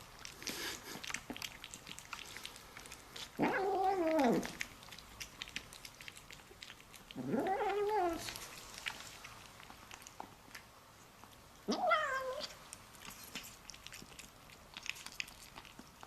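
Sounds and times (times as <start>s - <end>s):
cat moaning while eating: 3.2s - 4.6s, 7.1s - 8.4s, 11.6s - 12.6s.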